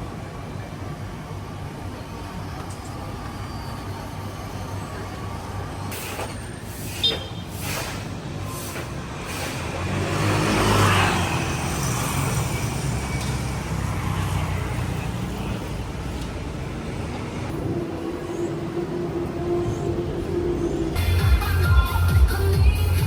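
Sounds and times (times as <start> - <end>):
traffic hum: 0.0 - 23.0
vehicle passing close by: 9.0 - 17.6.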